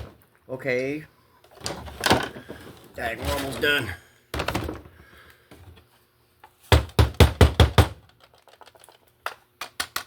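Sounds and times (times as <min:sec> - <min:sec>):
plastic parts clicking and knocking: 0:06.8 - 0:10.0.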